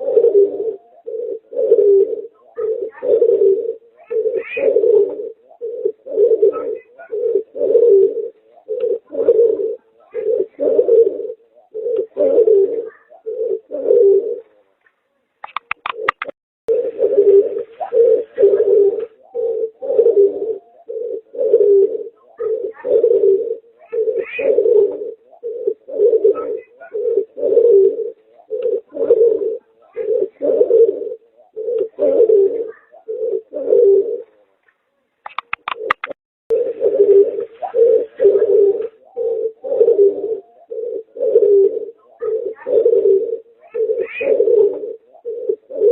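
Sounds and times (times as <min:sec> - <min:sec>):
pigeon cooing: 0:00.0 - 0:14.7, 0:15.4 - 0:45.9
sharp clicks: 0:15.4 - 0:16.4, 0:35.2 - 0:36.2.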